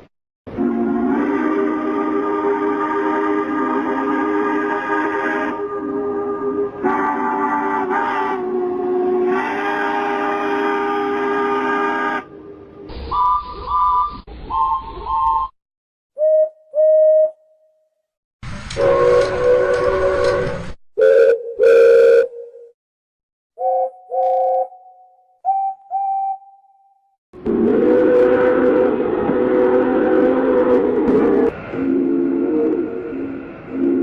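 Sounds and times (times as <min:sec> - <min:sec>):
locomotive whistle toots: 0:00.5 - 0:12.4, 0:18.7 - 0:22.7, 0:27.5 - 0:34.0
locomotive horn chord blasts: 0:00.5 - 0:12.5, 0:18.8 - 0:22.3, 0:33.6 - 0:34.0.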